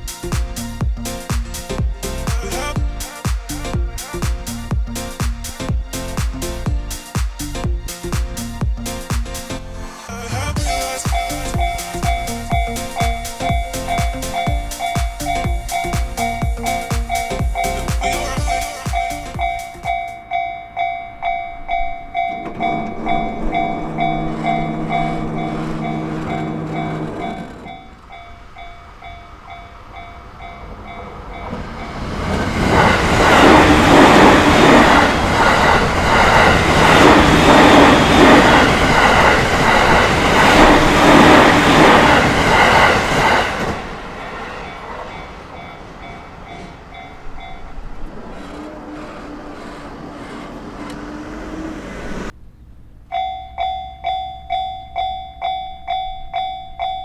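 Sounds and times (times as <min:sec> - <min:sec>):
train wheels clattering over rails: 0:10.6 - 0:20.2, 0:22.2 - 0:52.3
level crossing alarm dinging: 0:10.6 - 0:30.4.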